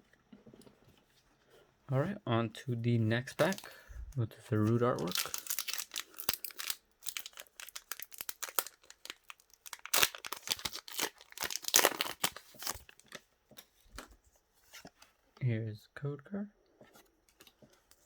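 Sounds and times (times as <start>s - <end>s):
foil wrapper crinkling: 4.6s - 13.2s.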